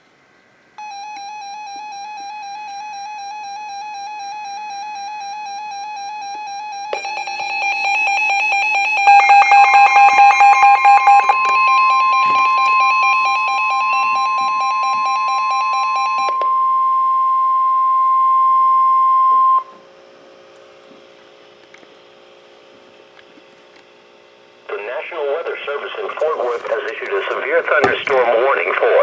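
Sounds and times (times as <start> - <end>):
steady high alarm tone: 0.8 - 19.8
rapid pulsing electronic beeping: 7.0 - 16.3
faint radio hiss: 24.6 - 29.0.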